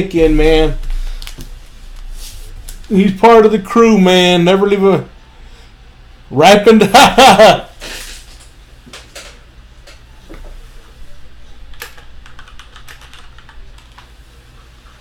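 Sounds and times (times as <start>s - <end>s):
computer keyboard typing: 11.7s - 14.1s.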